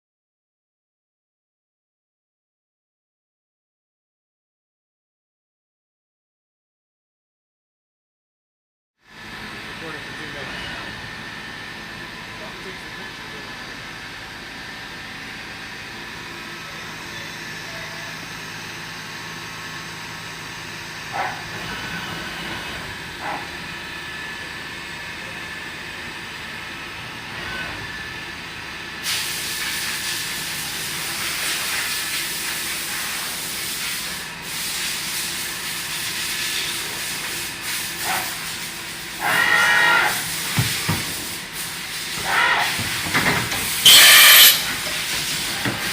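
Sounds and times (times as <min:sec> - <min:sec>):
milling machine humming: 0:42.1 - 0:45.9.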